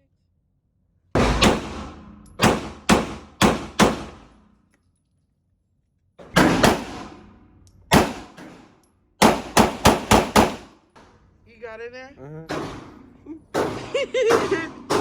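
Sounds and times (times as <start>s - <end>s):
gunshots ringing indoors: 1.2s - 4.6s, 6.3s - 10.8s.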